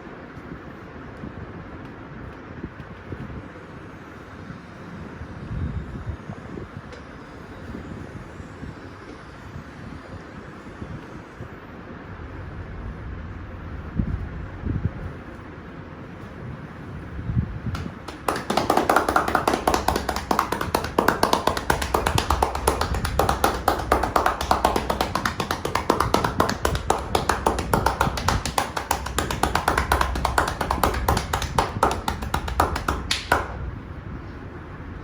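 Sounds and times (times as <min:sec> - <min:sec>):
hands slapping body in massage: 0:17.7 - 0:33.6.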